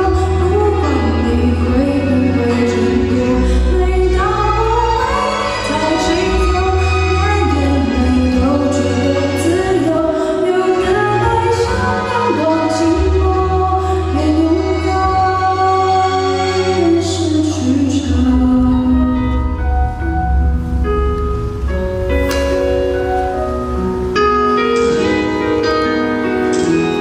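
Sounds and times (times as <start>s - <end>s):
woman singing pop ballad: 0.0s - 19.7s.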